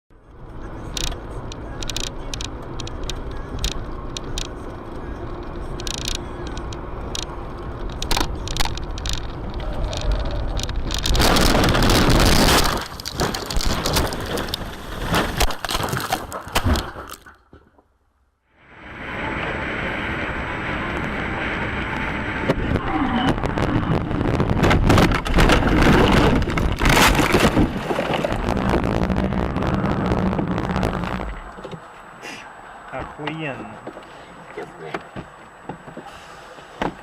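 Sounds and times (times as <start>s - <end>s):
car interior road noise: 0.2s - 15.5s, 18.6s - 37.0s
sharp clicks and knocks: 0.9s - 17.9s
loud burst of noise: 10.9s - 14.5s, 18.6s - 31.6s.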